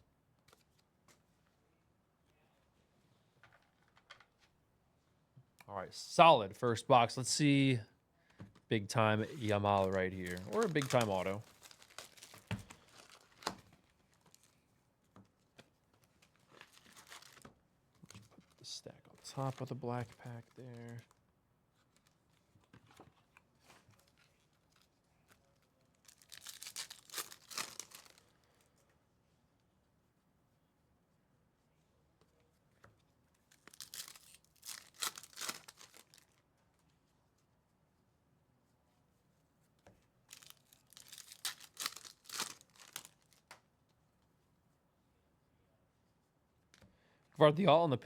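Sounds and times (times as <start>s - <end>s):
soft handling rustles: 8.2s - 30.1s
foil wrapper tearing and crinkling: 9.3s - 14.6s, 16.4s - 18.2s, 26.0s - 28.3s, 33.5s - 36.4s, 40.3s - 43.6s.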